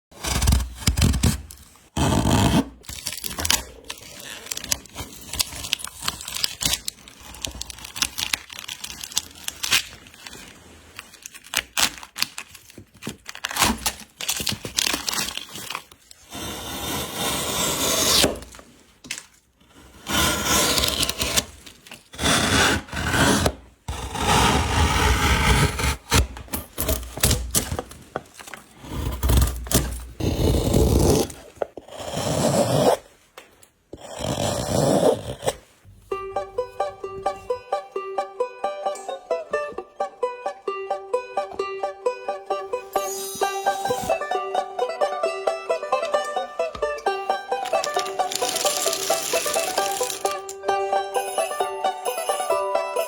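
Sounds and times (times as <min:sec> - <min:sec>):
scraping and rasping wood: 0:00.1 - 0:08.4, 0:15.2 - 0:18.6, 0:19.6 - 0:33.0, 0:47.5 - 0:50.6.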